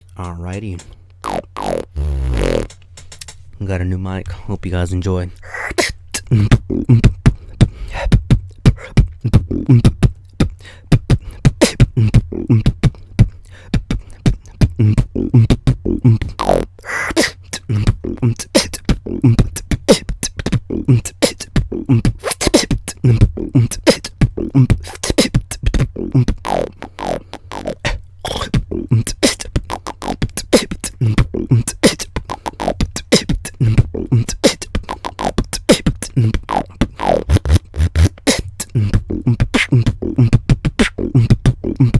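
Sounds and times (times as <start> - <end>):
beatboxing into a microphone: 0.0 - 2.8, 3.6 - 41.9
pitched vocal effects: 0.2 - 2.7, 4.2 - 7.1, 20.7 - 41.9.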